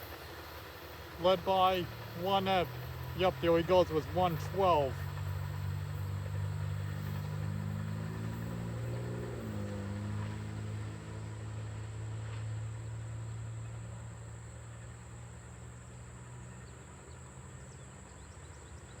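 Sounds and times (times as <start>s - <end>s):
train rumble: 0.0s - 17.5s.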